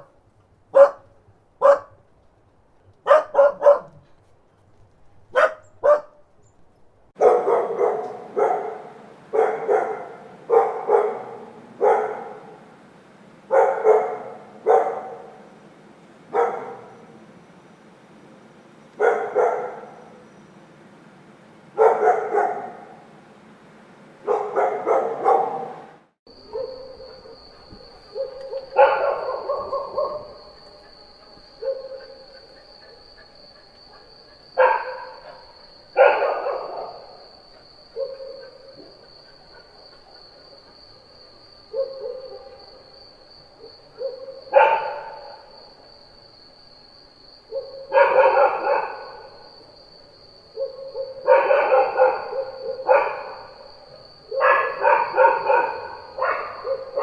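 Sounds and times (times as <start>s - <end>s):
dog barking: 0.0s - 2.0s, 3.0s - 4.1s, 5.3s - 6.2s, 7.2s - 12.8s, 13.4s - 15.6s, 16.2s - 17.3s, 19.0s - 20.3s, 21.7s - 23.2s, 24.2s - 37.2s, 37.9s - 40.0s, 41.7s - 42.8s, 43.6s - 45.5s, 47.5s - 49.5s, 50.6s - 57.0s.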